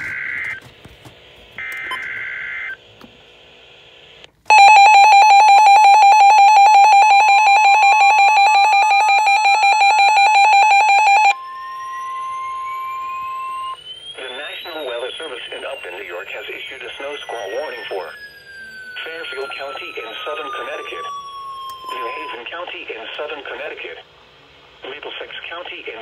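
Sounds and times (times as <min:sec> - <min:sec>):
rapidly pulsing electronic alarm: 0:00.0 - 0:02.8, 0:04.5 - 0:24.5
steady single-pitched alarm tone: 0:04.5 - 0:22.4
screechy data tones: 0:04.5 - 0:22.6
faint rising whistle: 0:11.3 - 0:22.5.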